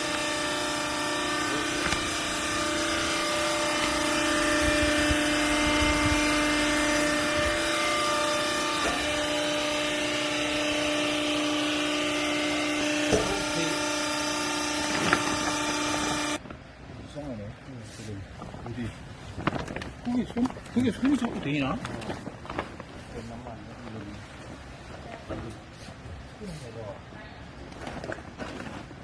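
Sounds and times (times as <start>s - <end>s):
hydraulic pump motor whining: 0.0s - 16.4s.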